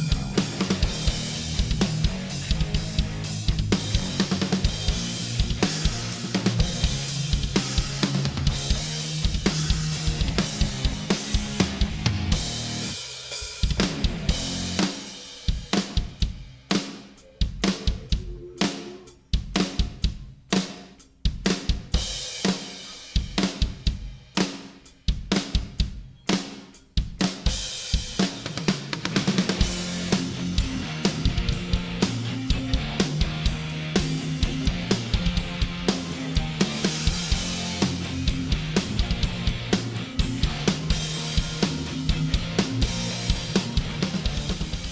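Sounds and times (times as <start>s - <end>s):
backing track music: 0.0s - 16.0s, 29.6s - 44.9s
drum kit playing: 0.0s - 44.9s.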